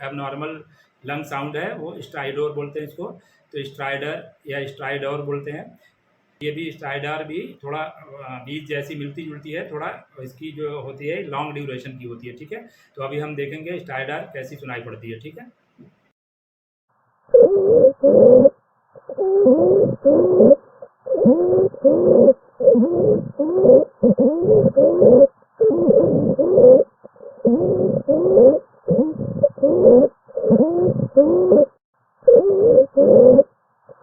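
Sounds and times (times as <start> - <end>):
crowing stridor breathing: 19.0 - 31.6.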